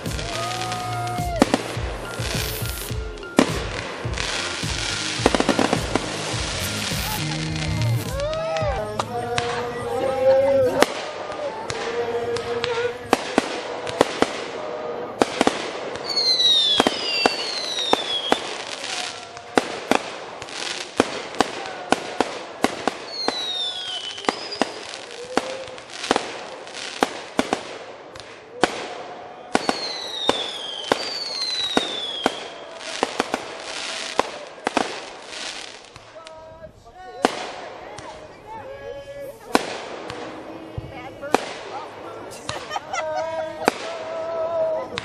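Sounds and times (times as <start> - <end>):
fireworks bangs and crackles: 0.0 - 45.0
whistling firework shells: 16.0 - 20.0, 23.0 - 25.7, 29.5 - 33.4.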